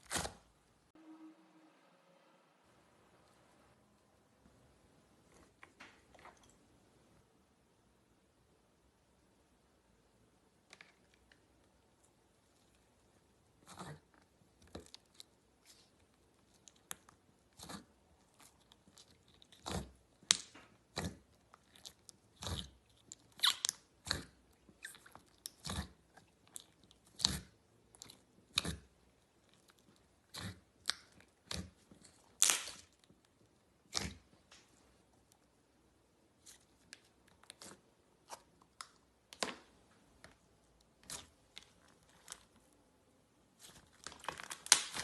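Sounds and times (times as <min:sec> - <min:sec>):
slime crackling and squishing: 0:12.4 - 0:35.6, 0:36.2 - 0:39.4, 0:40.7 - 0:42.8, 0:43.4 - 0:45.0.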